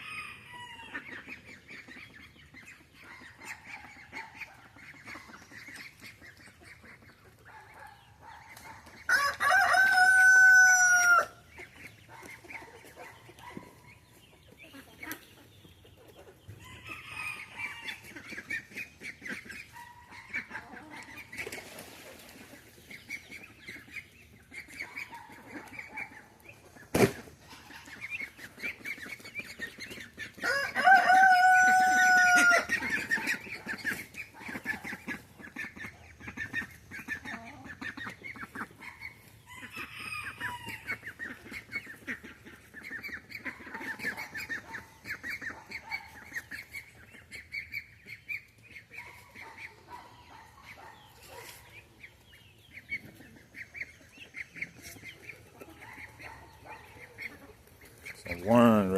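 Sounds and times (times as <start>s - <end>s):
chickens clucking: 0.0s - 58.9s
rooster crowing: 9.1s - 11.4s, 30.4s - 32.7s.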